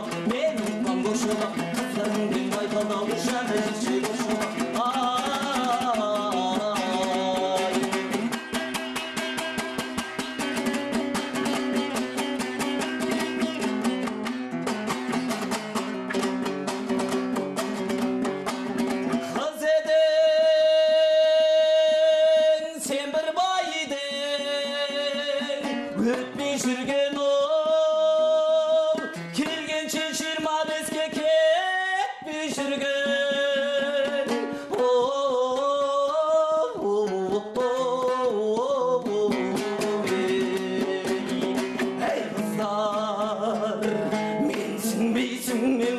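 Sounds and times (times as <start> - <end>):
person singing long notes: 0.0 - 8.4, 19.3 - 45.9
fast rhythmic lute strumming: 0.0 - 45.9.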